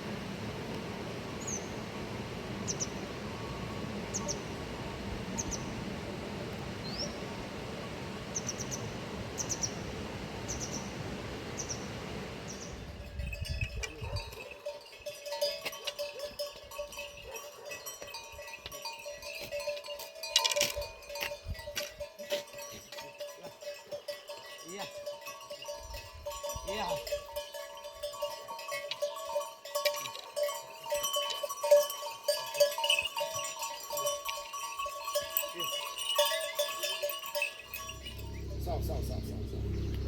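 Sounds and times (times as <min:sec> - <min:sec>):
animal bells clinking: 0:12.6 - 0:40.0.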